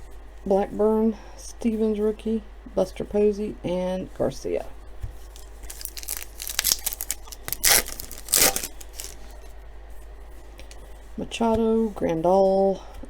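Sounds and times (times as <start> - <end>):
wrapper tearing and crinkling: 5.3 - 9.4.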